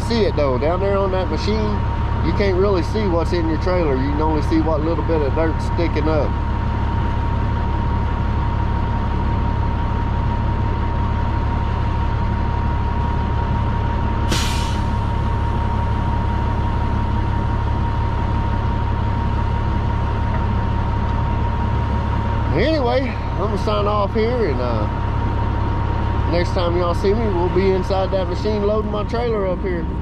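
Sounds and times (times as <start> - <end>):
diesel truck engine idling: 0.0 - 30.0
air brake hiss: 14.3 - 15.2.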